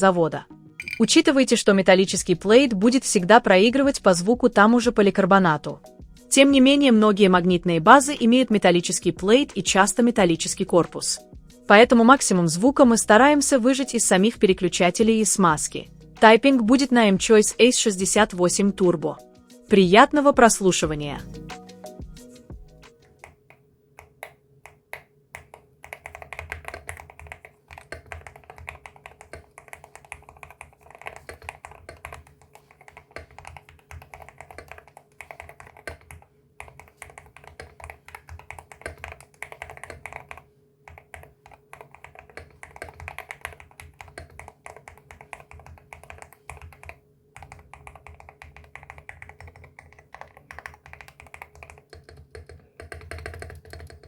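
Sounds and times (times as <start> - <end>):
soft keyboard keystroke clacks: 22.9 - 54.0.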